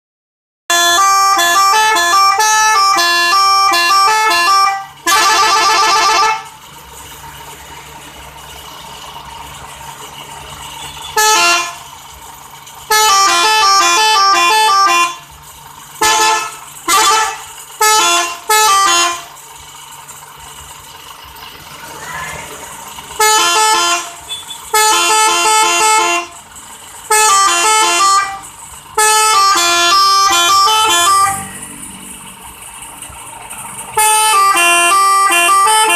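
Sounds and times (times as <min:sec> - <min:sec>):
musical horn playing tones: 0:00.7 - 0:06.6, 0:10.7 - 0:11.9, 0:12.9 - 0:15.3, 0:16.0 - 0:19.4, 0:23.1 - 0:31.7, 0:33.9 - 0:35.9.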